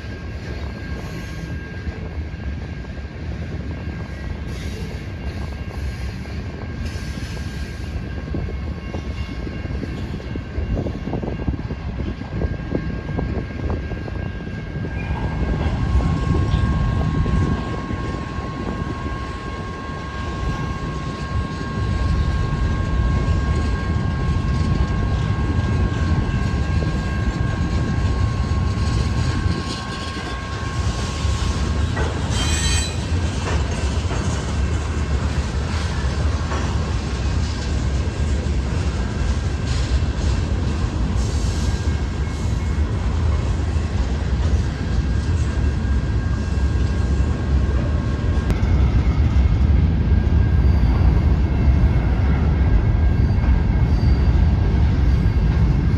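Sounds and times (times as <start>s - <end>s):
train rumbling past: 0.0s - 55.9s
high-pitched wheel squeal: 28.8s - 33.4s.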